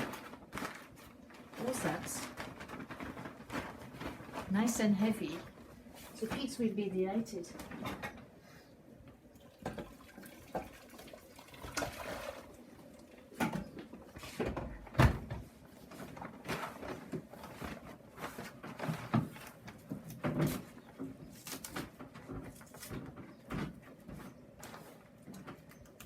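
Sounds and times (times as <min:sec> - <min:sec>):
paper bag rustling and crinkling: 0:00.0 - 0:06.7, 0:15.6 - 0:25.6.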